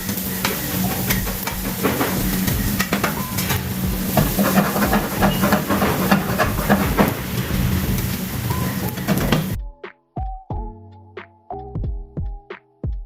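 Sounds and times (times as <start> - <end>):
chicken sizzling in hot oil: 0.0 - 9.6
sharp clicks and knocks: 0.0 - 9.6.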